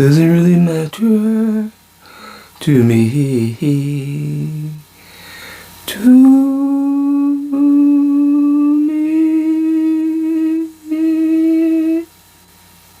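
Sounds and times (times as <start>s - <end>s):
person humming: 5.9s - 12.1s.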